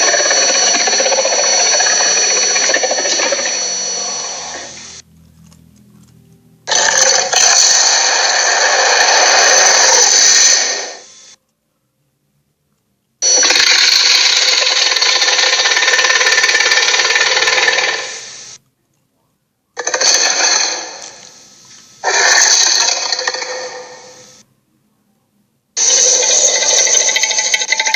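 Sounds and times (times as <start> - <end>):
raspy dinosaur roars: 6.7 - 11.0.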